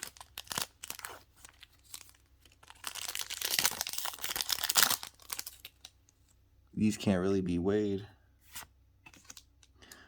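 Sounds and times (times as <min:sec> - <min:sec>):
foil wrapper crinkling: 0:00.0 - 0:05.9.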